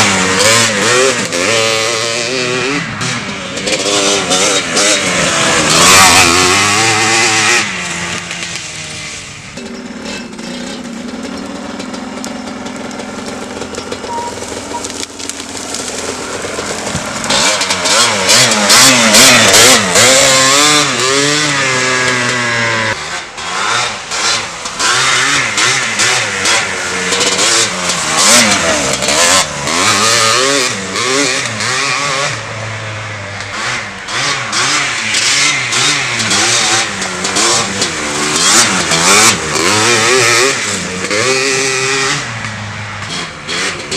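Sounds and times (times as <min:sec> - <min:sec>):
two-stroke engine revving: 0:00.0 - 0:43.9.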